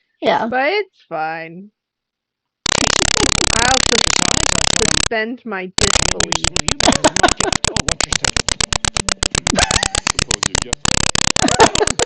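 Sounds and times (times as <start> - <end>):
rapid regular ticking: 2.6 - 5.2, 5.8 - 12.0
faint tv dialogue: 2.7 - 12.0.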